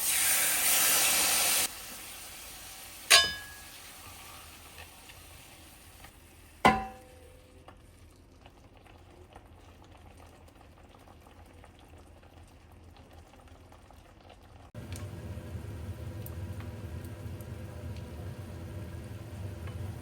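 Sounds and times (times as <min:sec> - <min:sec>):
food cooking on stove: 0:00.0 - 0:20.0
utensil clanging on kitchenware: 0:03.1 - 0:03.7, 0:06.7 - 0:07.2.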